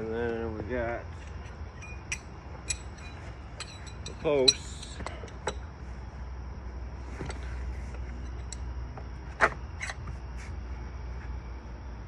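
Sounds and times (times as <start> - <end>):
steady low hum: 0.0 - 12.0
clicks and knocks of handled parts: 1.1 - 5.7.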